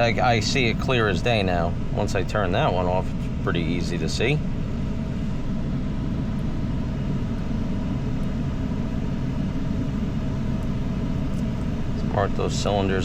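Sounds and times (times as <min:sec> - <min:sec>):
engine idling with misfire: 0:00.0 - 0:05.9, 0:10.1 - 0:13.0.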